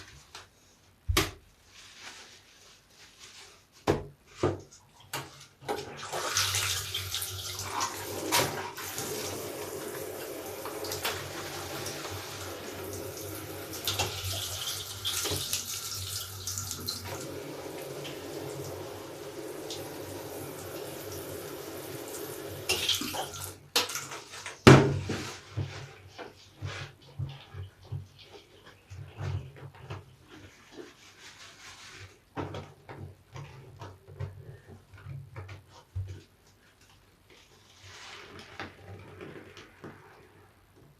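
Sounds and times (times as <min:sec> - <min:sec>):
water running over sponge: 0:06.0 - 0:23.6.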